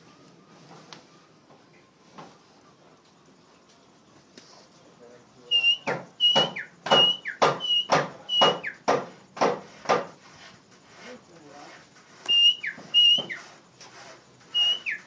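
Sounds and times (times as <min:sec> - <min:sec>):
bird whistling repeated notes: 0:05.5 - 0:08.9, 0:12.2 - 0:13.5, 0:14.5 - 0:15.0.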